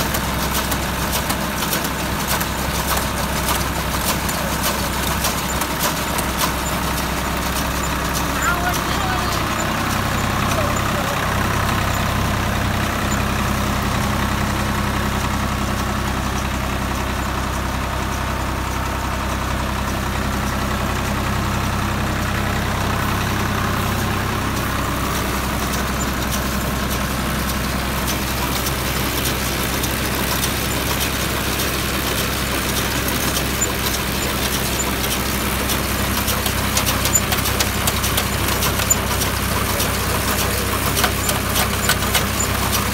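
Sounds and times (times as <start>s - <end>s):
tractor diesel engine running: 0.0s - 42.9s.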